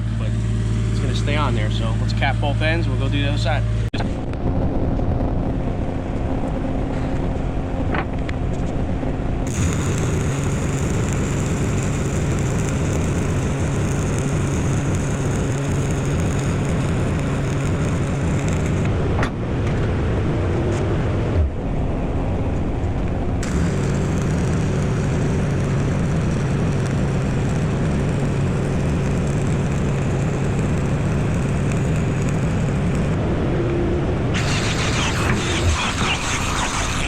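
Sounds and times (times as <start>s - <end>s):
steady engine drone: 0.0s - 37.0s
welding arc crackling and hissing: 9.5s - 18.9s, 23.4s - 33.2s, 34.4s - 37.0s.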